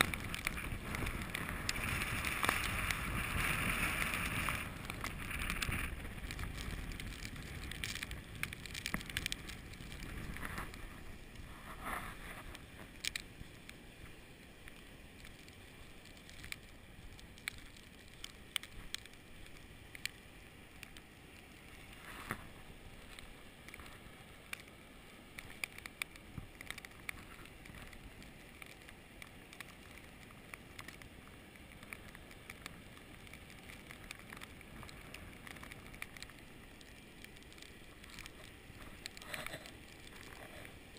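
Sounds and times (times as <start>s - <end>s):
wind buffeting microphone: 0.0s - 13.0s
crackling ticks: 0.0s - 40.9s.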